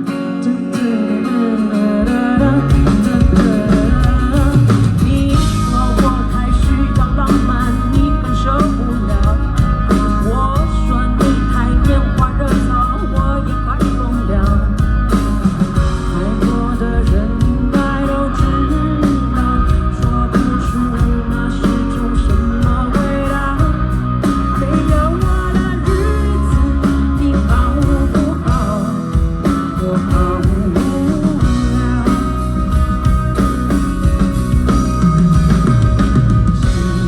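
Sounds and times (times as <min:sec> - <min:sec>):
electric guitar: 0:00.0 - 0:37.0
live rock band playing: 0:00.0 - 0:37.0.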